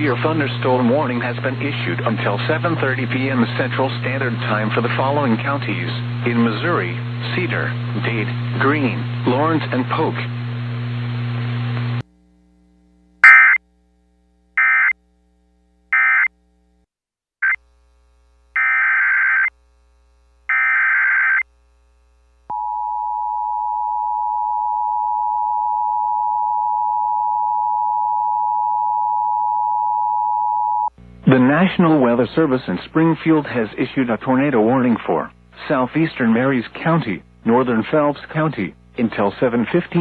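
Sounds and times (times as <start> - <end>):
radio hiss and hum: 0.0 - 12.8, 31.0 - 40.0
steady warning alarm tone: 13.2 - 13.6, 14.6 - 15.0, 18.6 - 19.5, 20.5 - 21.4.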